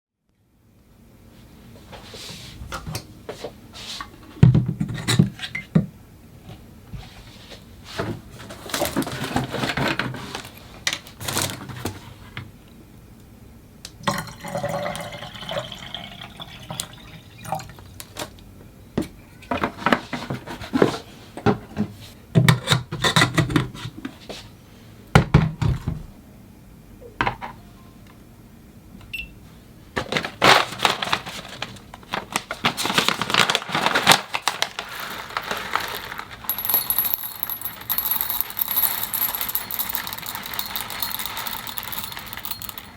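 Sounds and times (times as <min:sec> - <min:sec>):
coffee beans rattling: 0:34.0 - 0:42.9
utensils clinking: 0:34.8 - 0:42.9.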